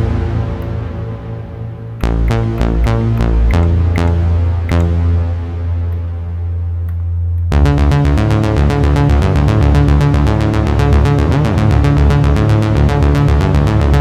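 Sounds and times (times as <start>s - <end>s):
fast sequenced synth pattern: 2.0s - 5.1s
synth sweep: 2.0s - 5.8s
held low synth bass note: 2.0s - 6.0s.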